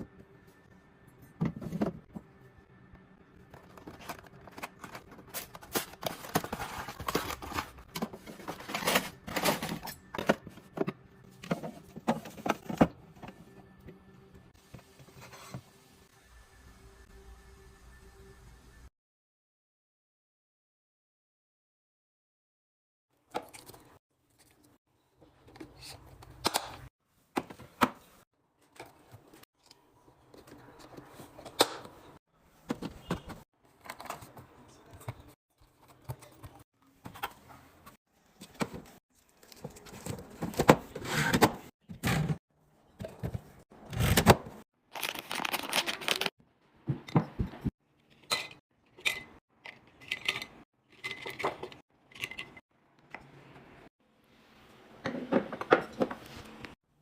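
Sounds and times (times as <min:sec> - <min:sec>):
packaging rustling and tearing: 0:44.9 - 0:46.3.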